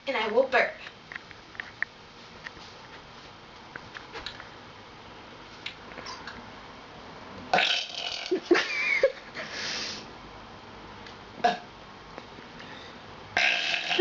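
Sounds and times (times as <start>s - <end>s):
person burping: 7.5s - 8.5s, 11.4s - 11.7s, 13.4s - 14.0s.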